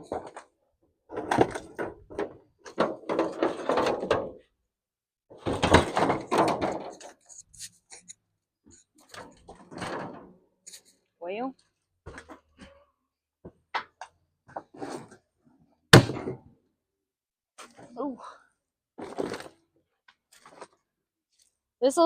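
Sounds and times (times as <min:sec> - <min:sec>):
knocks rattles and scrapes: 0:00.0 - 0:04.5, 0:05.3 - 0:11.0, 0:13.5 - 0:15.4, 0:19.0 - 0:21.5.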